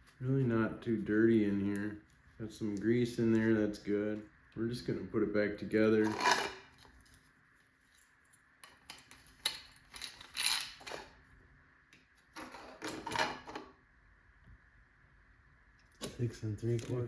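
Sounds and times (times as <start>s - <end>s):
small metal parts clicking and scraping: 6.0s - 7.2s, 7.9s - 11.2s.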